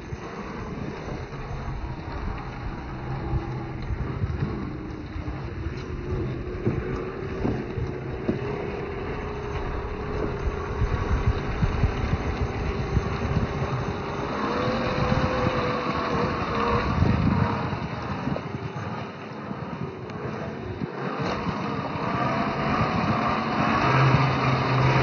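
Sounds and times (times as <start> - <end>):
tyres and chassis knocking: 0.0 - 18.5
electric motor and gearbox whining: 0.0 - 25.0.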